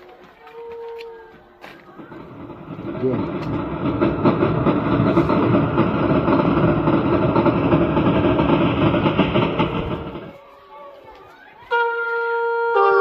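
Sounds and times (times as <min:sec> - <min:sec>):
keyboard train sound effect: 0:01.8 - 0:10.4.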